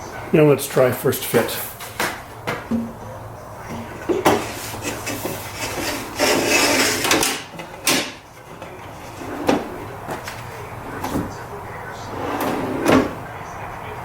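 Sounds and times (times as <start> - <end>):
wooden drawer sliding: 9.1 - 11.4, 12.0 - 13.2.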